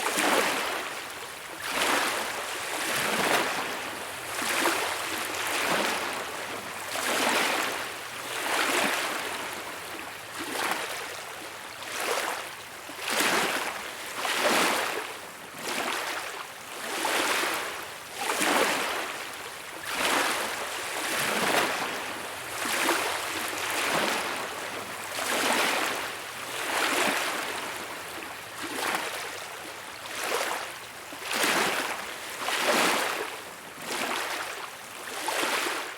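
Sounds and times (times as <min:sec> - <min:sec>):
small waves lapping on beach: 0:00.0 - 0:35.9.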